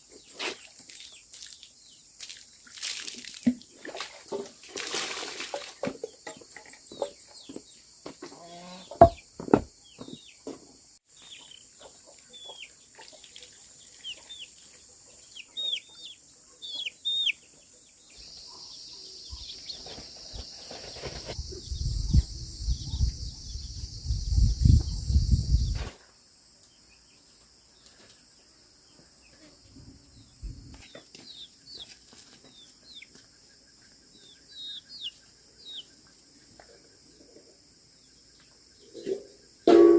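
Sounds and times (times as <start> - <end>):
knocks: 9.0 - 10.2
chicks peeping: 15.2 - 17.6.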